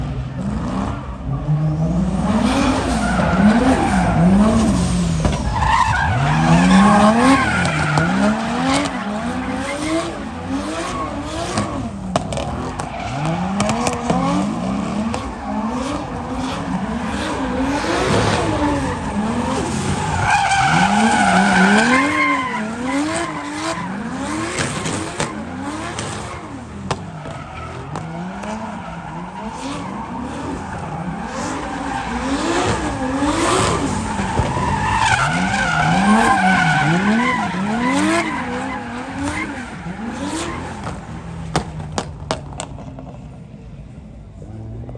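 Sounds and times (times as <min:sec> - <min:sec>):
engine revving hard: 0:06.2 - 0:11.9, 0:12.5 - 0:20.0, 0:20.7 - 0:26.6, 0:31.2 - 0:34.1, 0:35.2 - 0:40.9.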